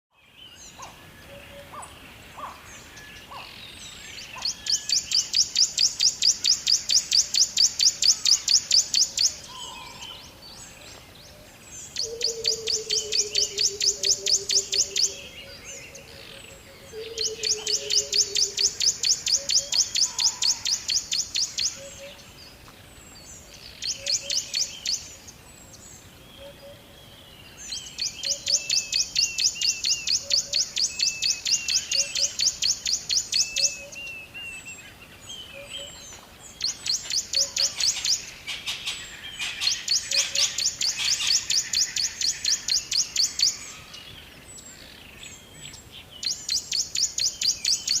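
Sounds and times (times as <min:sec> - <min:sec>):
high pulsing bird trills: 0:11.9 - 0:22.2.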